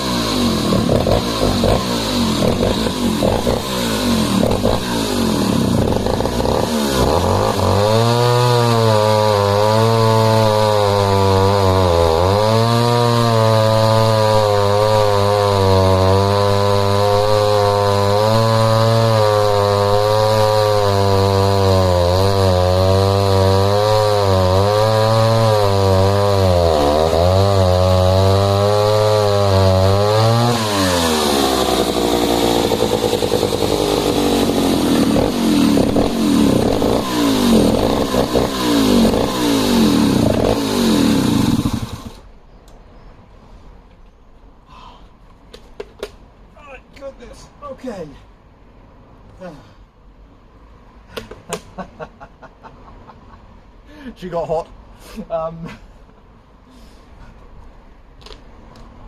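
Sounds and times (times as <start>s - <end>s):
chainsaw cutting log: 0.0s - 42.3s.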